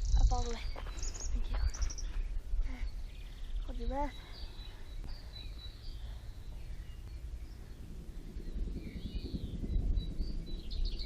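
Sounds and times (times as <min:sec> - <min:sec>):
faint bird chirps: 0:00.0 - 0:11.0
low microphone rumble: 0:00.0 - 0:11.0.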